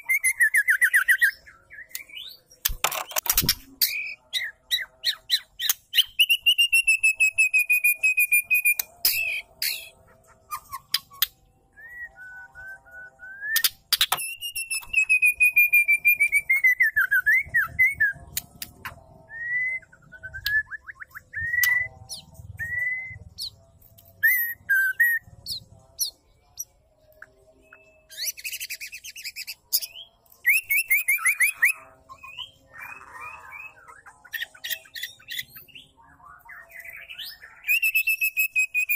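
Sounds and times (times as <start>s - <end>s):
bird whistling song: 0.0s - 2.8s, 3.8s - 23.6s, 24.2s - 38.9s
bird clicks and chattering rattles: 2.6s - 3.7s.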